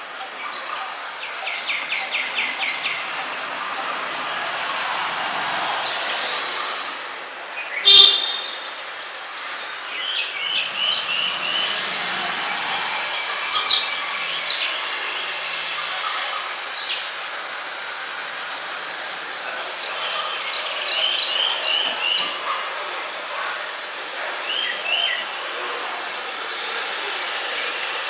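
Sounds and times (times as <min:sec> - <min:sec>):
outdoor background noise: 0:00.0 - 0:28.0
birds chirping and calling: 0:00.3 - 0:06.5, 0:07.7 - 0:15.3.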